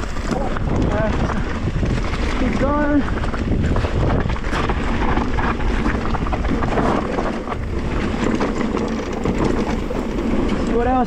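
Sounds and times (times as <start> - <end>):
bike rattling and knocking: 0.0 - 11.0
bike tyres rumbling on dirt: 0.0 - 11.0
wind buffeting microphone: 0.0 - 11.0.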